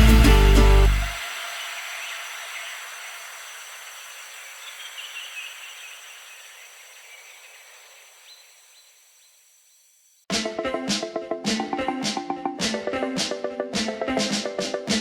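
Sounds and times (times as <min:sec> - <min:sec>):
steady high hiss: 0:00.5 - 0:10.3.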